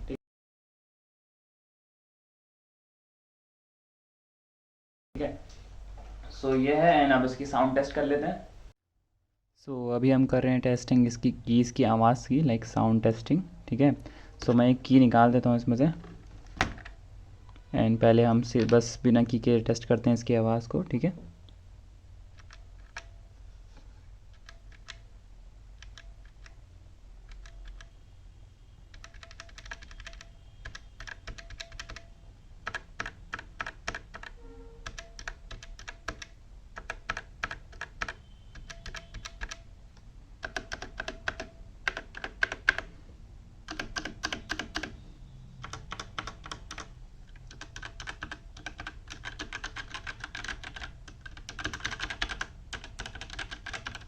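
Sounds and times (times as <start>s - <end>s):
mechanical keyboard typing: 22.3s - 23.2s, 24.3s - 25.1s, 25.8s - 26.6s, 27.2s - 28.0s, 28.9s - 39.7s, 40.4s - 42.9s, 43.6s - 45.0s, 45.6s - 54.0s.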